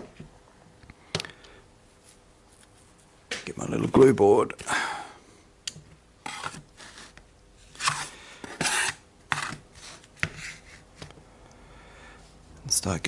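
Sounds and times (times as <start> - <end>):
rubbing and scraping noises: 6.2 - 11.1.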